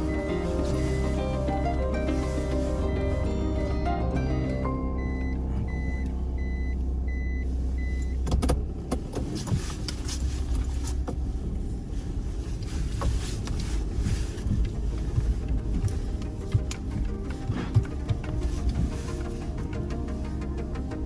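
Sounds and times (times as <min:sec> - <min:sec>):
car engine low drone: 0:00.0 - 0:21.0
short high beeps: 0:04.4 - 0:08.2.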